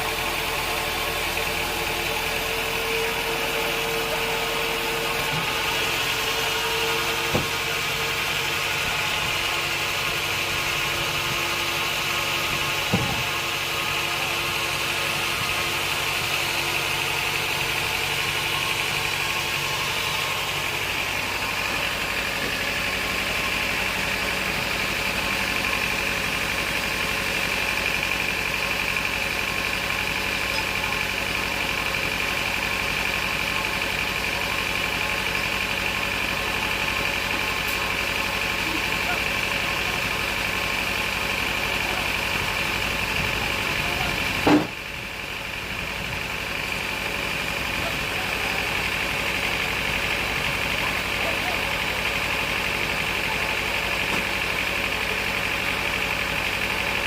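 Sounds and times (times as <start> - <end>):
sawmill machinery drone: 0.0 - 57.0
sharp knocks: 7.3 - 7.6.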